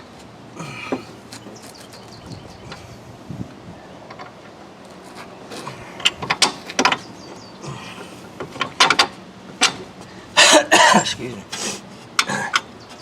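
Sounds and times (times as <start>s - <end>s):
metal bolts clicking and clinking: 8.4s - 9.9s.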